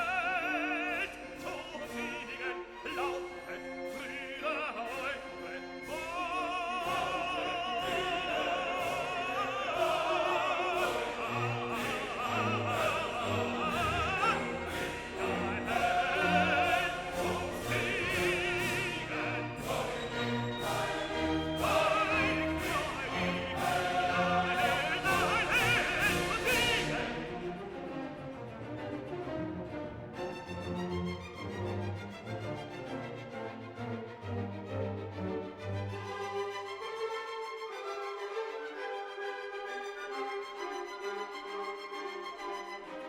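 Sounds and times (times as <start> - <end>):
operatic singing: 0.0 - 34.4
orchestral accompaniment: 0.0 - 43.0.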